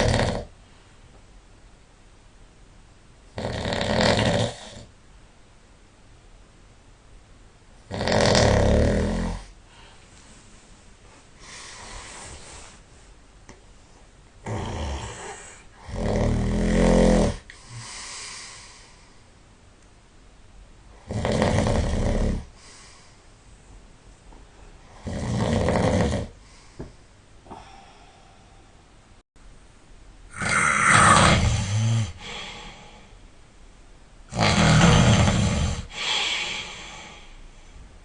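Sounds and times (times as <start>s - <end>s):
person snoring heavily: 0.0s - 0.5s, 3.4s - 4.9s, 7.9s - 9.5s, 14.4s - 18.9s, 21.0s - 23.0s, 24.9s - 26.6s, 30.3s - 33.2s, 34.3s - 37.5s.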